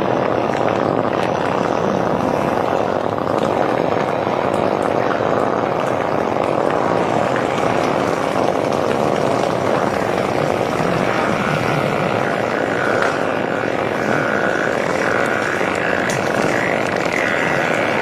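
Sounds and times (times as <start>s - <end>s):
fart sound effect: 0.0s - 18.0s.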